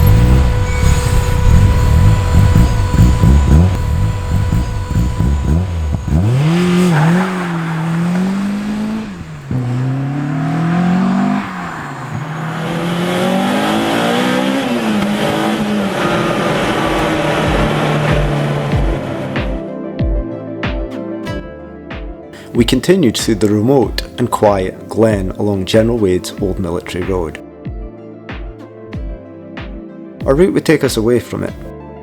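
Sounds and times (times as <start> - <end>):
low rumble: 0.0 - 13.6
sports car engine accelerating: 0.0 - 19.7.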